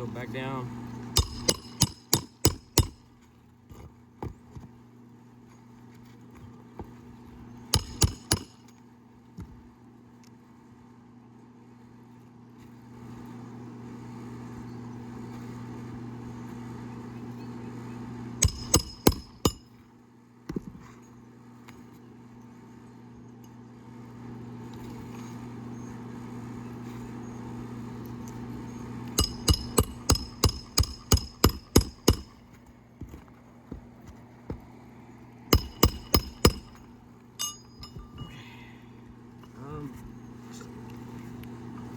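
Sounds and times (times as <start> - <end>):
steady low hum: 0.0 - 41.9
hammer striking roofing nails: 1.2 - 3.1, 7.8 - 8.6, 18.4 - 19.7, 29.2 - 33.9, 35.5 - 36.9.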